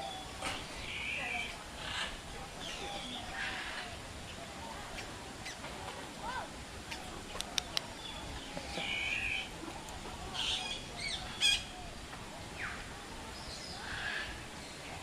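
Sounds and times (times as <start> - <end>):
birds calling: 0.0 - 5.7, 6.8 - 12.0.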